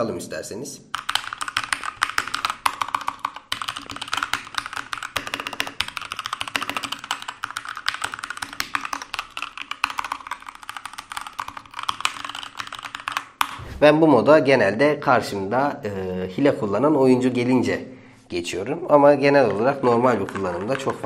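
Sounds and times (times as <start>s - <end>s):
mechanical keyboard typing: 1.0s - 13.6s.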